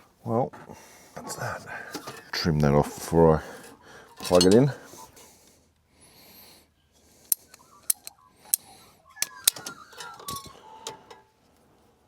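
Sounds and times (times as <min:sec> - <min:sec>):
hand tools clicking and snapping: 0:07.3 - 0:11.0.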